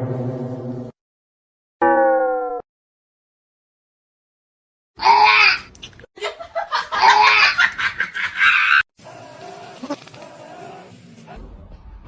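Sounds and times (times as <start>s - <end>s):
person laughing: 6.2s - 8.8s.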